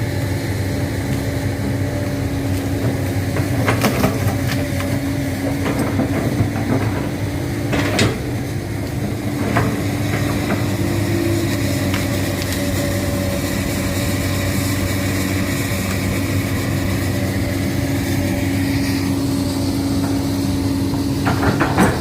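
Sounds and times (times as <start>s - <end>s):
excavator diesel engine running: 0.0s - 22.0s.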